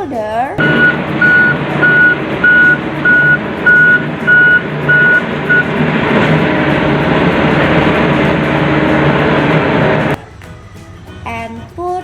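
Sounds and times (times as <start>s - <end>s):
reversing alarm beeping: 0.6s - 10.2s
truck engine rumble: 0.6s - 10.2s.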